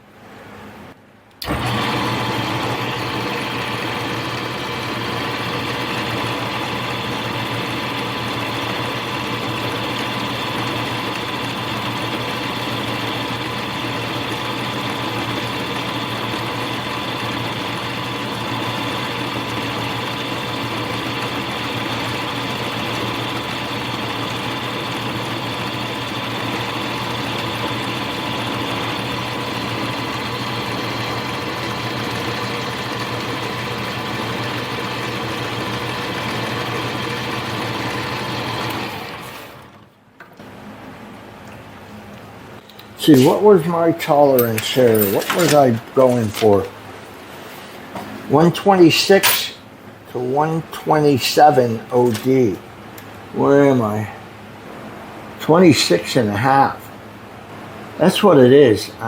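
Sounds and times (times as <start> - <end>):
lathe motor whining: 1.4 - 40.6.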